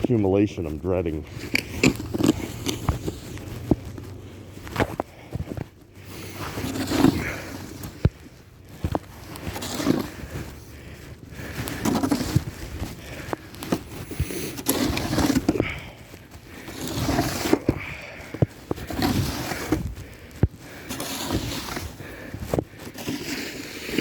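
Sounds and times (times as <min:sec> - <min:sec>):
snow shovel scraping: 0:00.0 - 0:24.0
shovel blade knocking ground: 0:11.7 - 0:12.5, 0:13.2 - 0:15.8.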